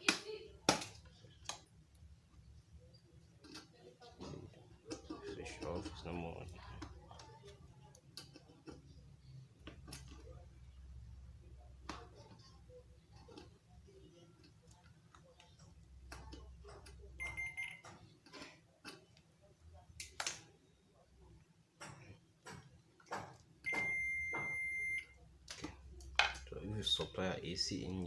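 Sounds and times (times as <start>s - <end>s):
multimeter continuity beeps: 17.2s - 18.0s, 23.6s - 25.2s.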